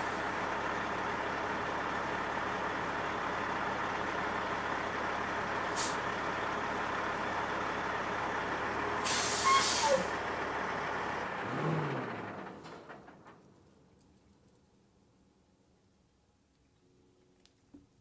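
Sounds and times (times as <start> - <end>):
truck diesel engine running: 0.0 - 13.6
compressed air hiss: 5.8 - 6.0, 9.0 - 9.9.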